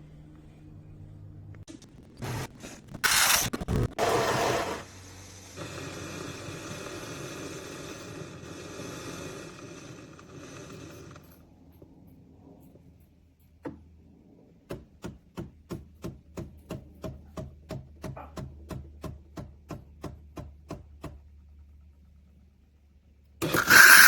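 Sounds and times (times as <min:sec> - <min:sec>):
espresso machine humming: 0:23.4 - 0:24.0
loud mechanical whirring: 0:23.4 - 0:24.0.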